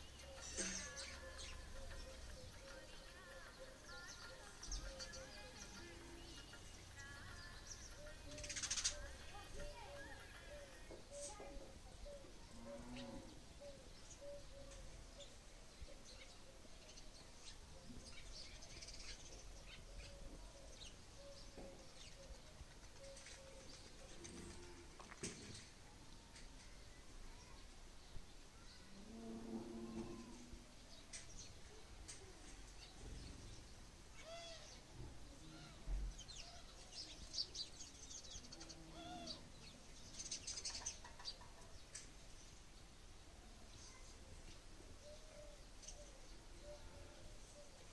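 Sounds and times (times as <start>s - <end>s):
small birds chirping: 0.0s - 47.9s
peacock calls: 0.1s - 11.4s.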